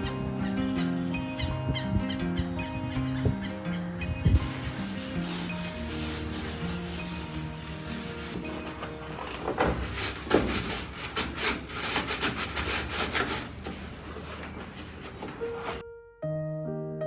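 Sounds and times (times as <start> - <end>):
faint background music: 0.0 - 13.0
repeated rubbing strokes: 4.3 - 8.8, 9.7 - 15.8.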